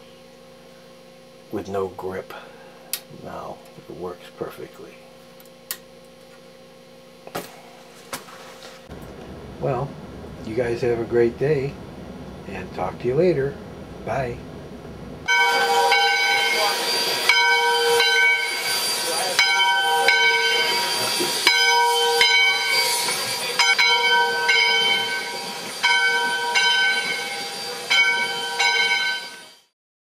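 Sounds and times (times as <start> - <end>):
held pitched music notes: 15.3 - 29.1.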